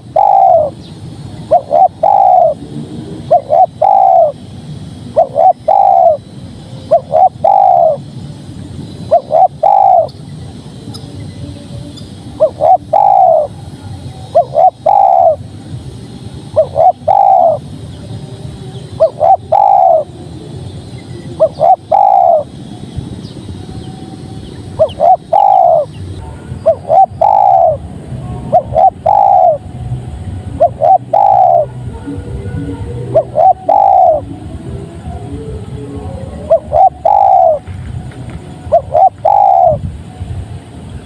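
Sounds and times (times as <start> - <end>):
dove cooing: 0.0 - 0.8, 1.4 - 2.6, 3.2 - 4.4, 5.1 - 8.1, 9.1 - 10.1, 12.4 - 13.6, 14.3 - 15.4, 16.5 - 17.7, 19.0 - 20.1, 21.4 - 22.5, 24.8 - 29.7, 30.5 - 34.5, 35.3 - 37.7, 38.7 - 39.8.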